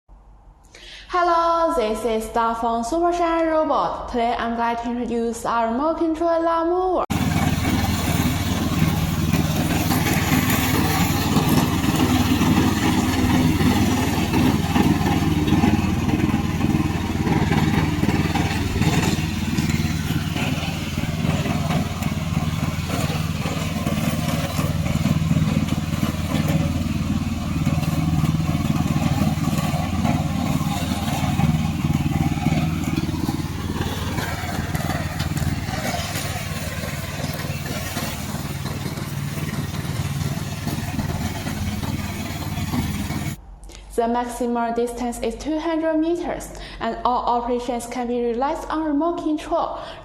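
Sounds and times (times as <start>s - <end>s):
lawn mower engine running: 7.1s - 43.4s.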